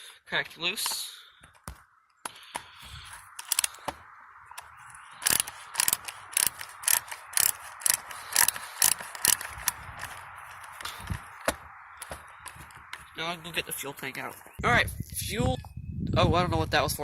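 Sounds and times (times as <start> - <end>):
ratchet tool clicking: 3.3 - 3.8, 5.2 - 10.9.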